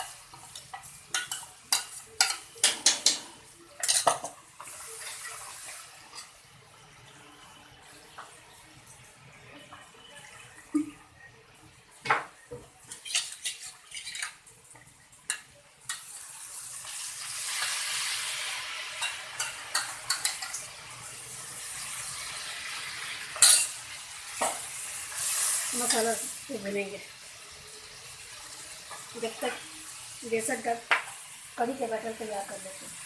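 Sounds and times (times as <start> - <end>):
metal spoon clinking on pan: 0.0 - 5.3, 19.0 - 20.7, 23.4 - 23.8
spoon scraping pan: 0.0 - 6.4, 12.8 - 14.4
masala sizzling in hot oil: 0.0 - 33.0.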